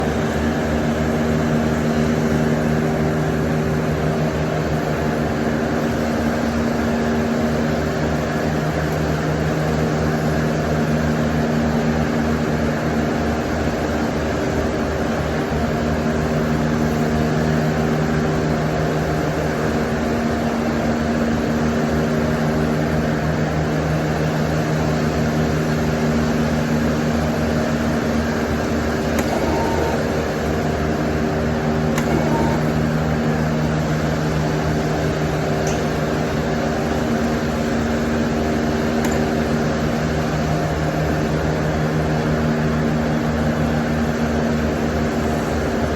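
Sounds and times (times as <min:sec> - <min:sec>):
welding machine hum: 0:00.0 - 0:45.9
welding arc buzz and crackle: 0:26.0 - 0:41.4.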